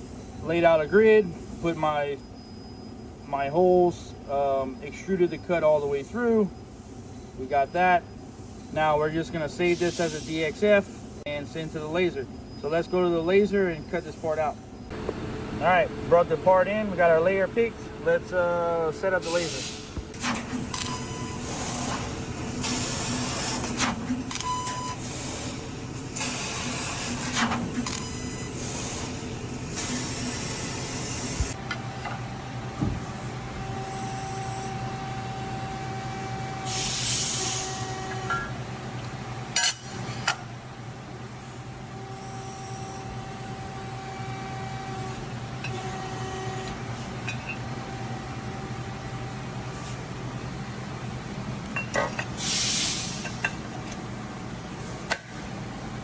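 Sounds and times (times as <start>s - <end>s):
assist gas hissing bursts: 9.7s - 10.5s, 14.9s - 31.6s, 36.6s - 37.8s, 52.4s - 53.4s
steady whining tones: 14.9s - 32.2s
machine hum: 14.9s - 33.8s.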